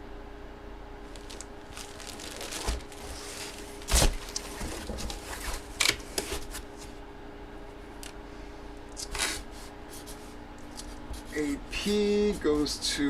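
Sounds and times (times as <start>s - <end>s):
plastic packaging crinkling: 1.0s - 6.8s.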